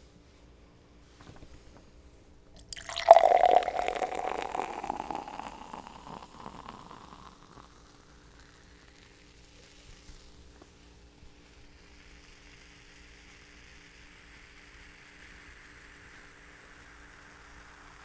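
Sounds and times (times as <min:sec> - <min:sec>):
fizzy water poured into glass: 0:02.6 - 0:09.5.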